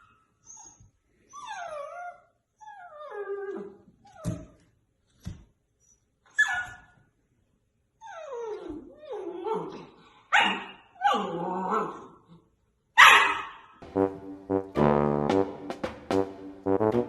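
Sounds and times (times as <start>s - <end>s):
dog whining: 0.0s - 4.6s, 8.0s - 9.9s
dog yipping: 6.3s - 7.0s, 10.3s - 12.0s, 13.0s - 13.7s.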